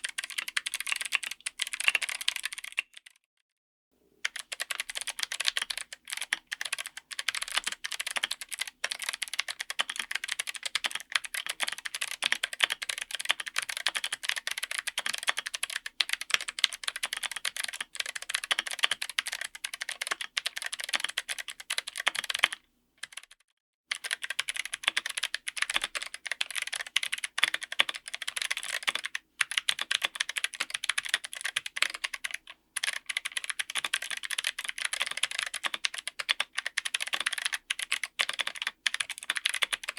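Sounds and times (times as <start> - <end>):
typing on mechanical keyboard: 0.0 - 3.2, 4.2 - 39.9.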